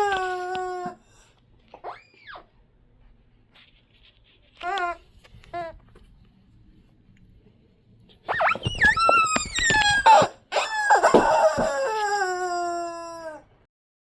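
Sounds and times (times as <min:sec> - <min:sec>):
dog toy squeaking: 0:08.3 - 0:11.2.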